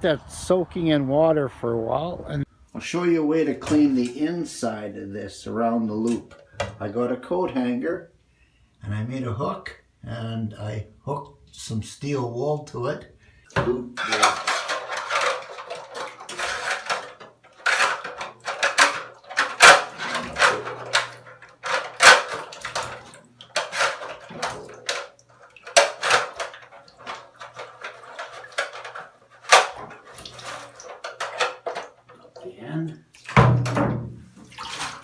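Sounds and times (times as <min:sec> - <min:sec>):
wire scraping through fan: 0:14.0 - 0:32.1.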